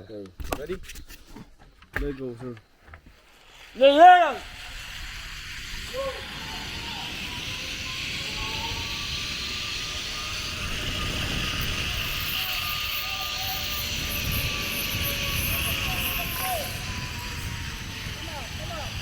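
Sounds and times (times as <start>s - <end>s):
zipline pulleys whirring on cable: 3.3s - 19.0s
wind buffeting microphone: 4.5s - 19.0s.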